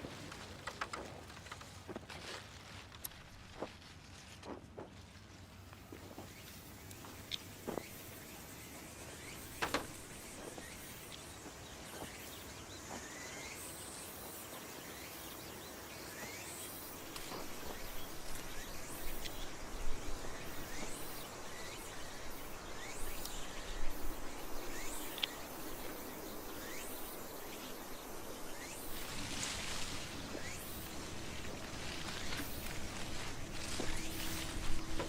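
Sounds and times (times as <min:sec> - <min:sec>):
steady outdoor noise: 0:00.0 - 0:35.0.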